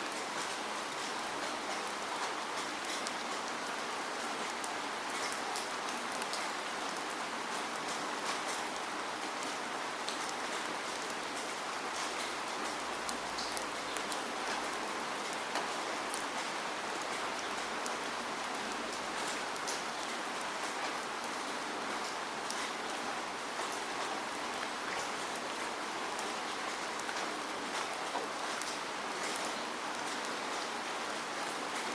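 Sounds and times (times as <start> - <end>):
raindrops ticking: 1.0 - 31.9.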